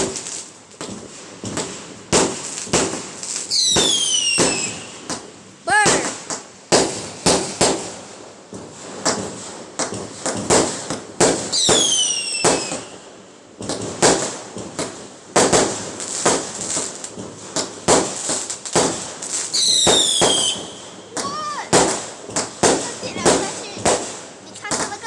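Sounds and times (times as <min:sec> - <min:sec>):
fireworks bangs and pops: 0:00.0 - 0:25.0
fireworks falling whistle: 0:02.8 - 0:06.3, 0:11.3 - 0:13.0, 0:18.3 - 0:25.0.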